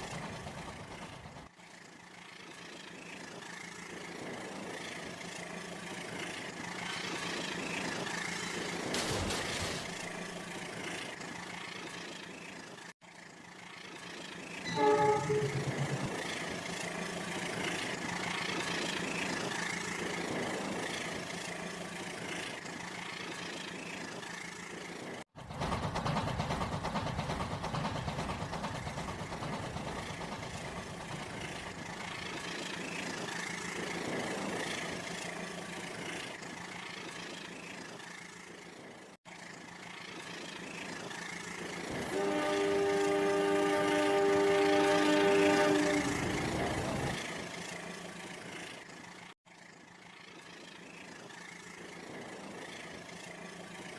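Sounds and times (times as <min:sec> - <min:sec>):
train running hum: 0:00.0 - 0:53.9
train horn blast: 0:14.6 - 0:16.2, 0:42.0 - 0:46.6.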